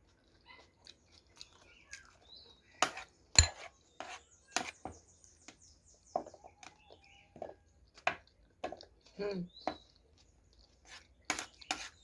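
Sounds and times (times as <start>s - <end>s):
cutlery clicking on plate: 2.8s - 3.7s.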